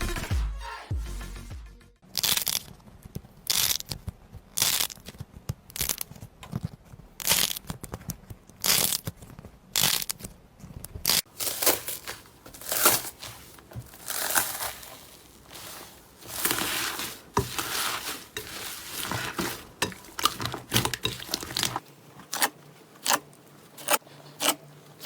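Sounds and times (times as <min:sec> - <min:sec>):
slime squishing by hand: 0:11.0 - 0:25.0.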